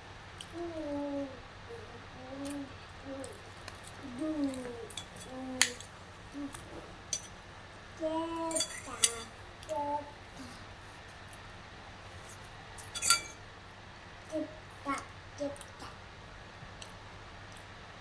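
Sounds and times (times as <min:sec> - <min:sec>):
utensils clinking on plate: 0:04.6 - 0:06.0, 0:07.1 - 0:07.4, 0:08.4 - 0:09.4, 0:12.8 - 0:13.4.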